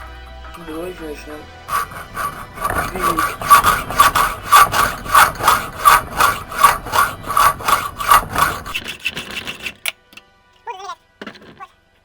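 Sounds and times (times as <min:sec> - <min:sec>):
hand saw cutting metal: 0:01.6 - 0:10.0.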